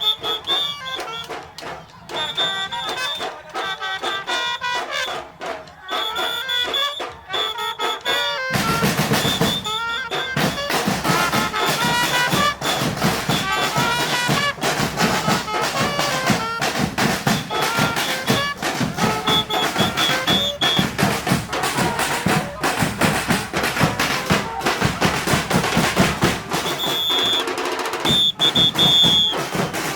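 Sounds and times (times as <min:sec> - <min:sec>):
brass band playing: 0:00.0 - 0:29.9
dense steady drumming: 0:10.5 - 0:29.9.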